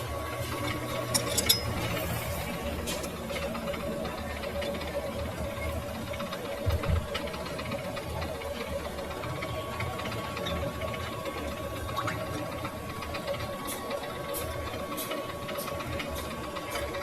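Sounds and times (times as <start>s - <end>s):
metal lathe running: 0.0s - 11.8s.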